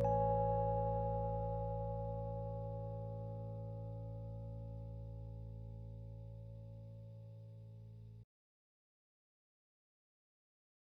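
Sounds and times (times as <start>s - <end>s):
held music chord: 0.0s - 8.0s.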